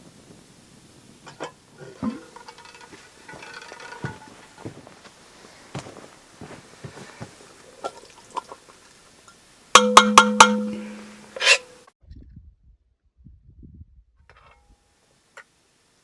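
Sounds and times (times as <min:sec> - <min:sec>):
metal cookware clinking: 0:01.3 - 0:04.4, 0:09.8 - 0:11.8
metallic knocks: 0:01.3 - 0:04.4, 0:09.8 - 0:11.7
metal scrape: 0:01.3 - 0:04.7, 0:10.1 - 0:11.8
loud metallic clang: 0:09.8 - 0:11.7.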